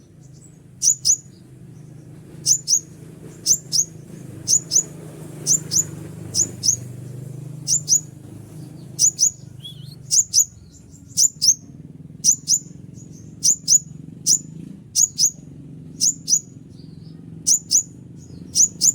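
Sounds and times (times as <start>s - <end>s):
bird high double chip notes: 0.8s - 1.4s, 2.4s - 7.0s, 7.6s - 8.2s, 8.8s - 15.4s, 16.0s - 16.5s, 17.5s - 18.9s.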